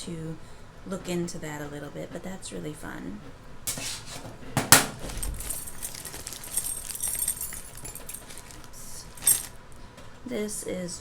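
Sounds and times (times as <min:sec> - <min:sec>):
jewelry clinking and jangling: 0:05.0 - 0:09.7.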